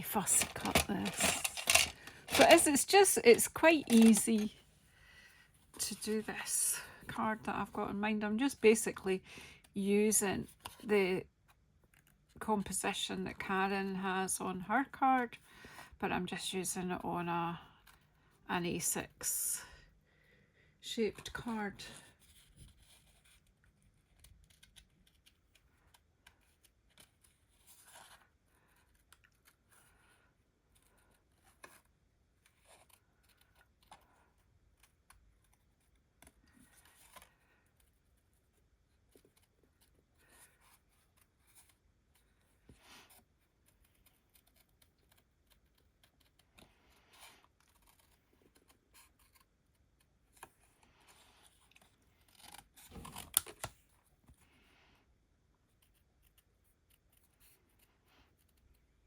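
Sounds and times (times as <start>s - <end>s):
scissors snipping paper: 0.2s - 4.5s.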